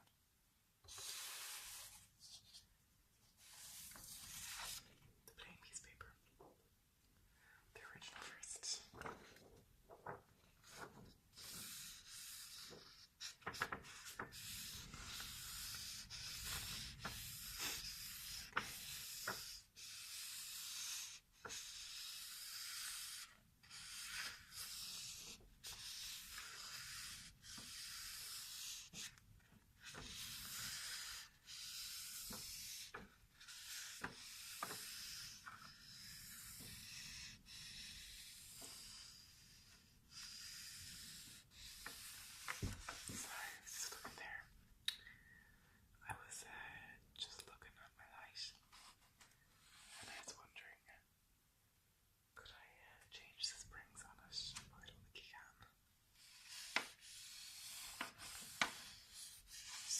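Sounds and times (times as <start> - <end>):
paper rubbed by hand: 0.9 - 2.6, 3.4 - 4.9, 10.6 - 29.2, 29.8 - 44.2, 56.2 - 59.9.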